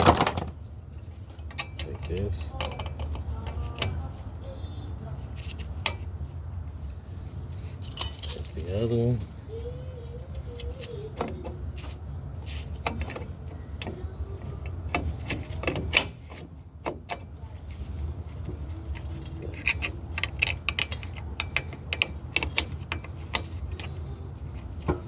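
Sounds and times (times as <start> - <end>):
metal brake parts clinking: 1.3 - 4.0, 7.8 - 8.7, 18.4 - 24.0.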